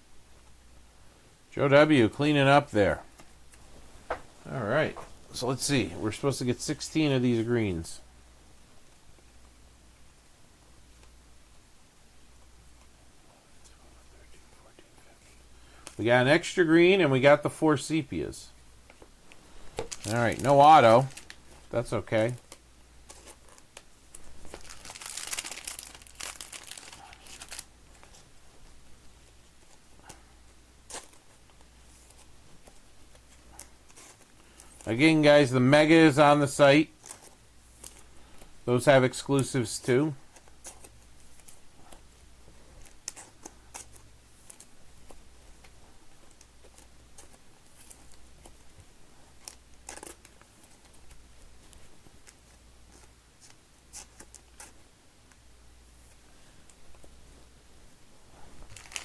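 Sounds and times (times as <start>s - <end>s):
faint low hum: 0.0s - 59.0s
wrapping crinkling: 19.3s - 30.2s, 30.8s - 42.0s, 42.7s - 54.8s, 58.4s - 59.0s.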